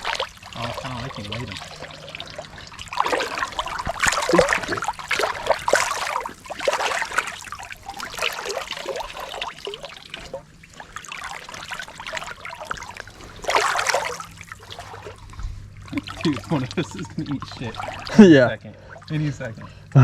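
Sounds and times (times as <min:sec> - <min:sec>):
water splashing from wading: 0:00.0 - 0:20.0.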